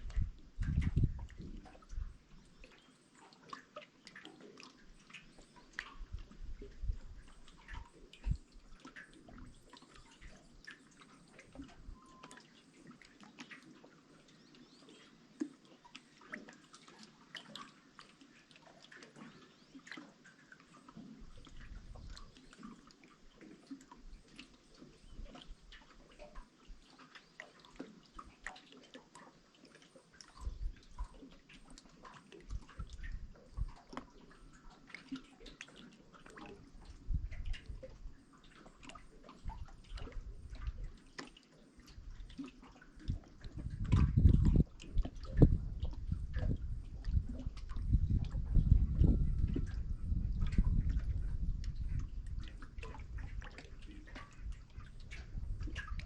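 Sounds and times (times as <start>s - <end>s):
faint water trickle: 0.0s - 56.0s
water dripping and splashing: 0.0s - 56.0s.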